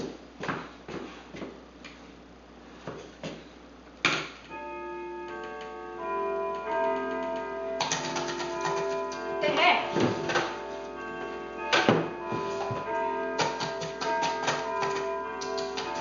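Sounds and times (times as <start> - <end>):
computer keyboard and mouse clicks: 7.0 - 9.2, 13.4 - 16.0.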